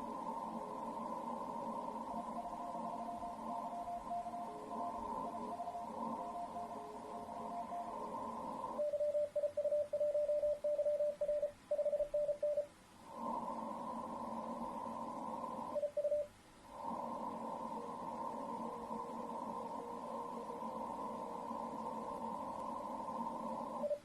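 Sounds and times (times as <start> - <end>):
radio receiver hiss: 0.0 - 24.0
morse code tone: 2.1 - 12.7.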